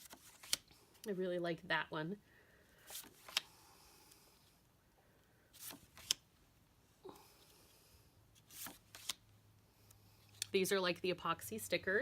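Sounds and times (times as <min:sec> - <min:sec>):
paper cards clicking and rustling: 0:00.0 - 0:00.7, 0:02.8 - 0:03.5, 0:05.6 - 0:06.2, 0:08.4 - 0:09.2.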